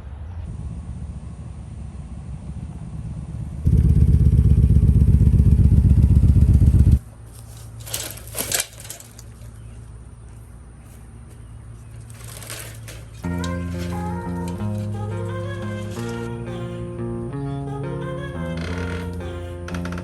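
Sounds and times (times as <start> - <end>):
engine running with low pulse: 0.0 - 20.0
short scraping or rustling: 7.2 - 9.8, 11.8 - 16.3.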